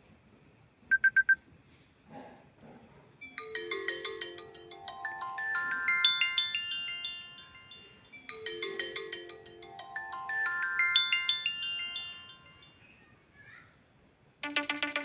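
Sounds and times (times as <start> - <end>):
quick identical beeps: 0.9 - 1.4
bright plucked ringtone melody: 3.3 - 12.8, 14.4 - 15.0.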